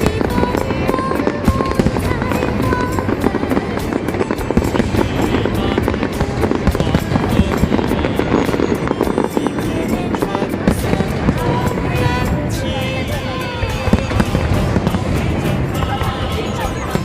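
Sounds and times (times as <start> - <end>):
fireworks crackling and banging: 0.0 - 17.0
music playing: 0.0 - 17.0.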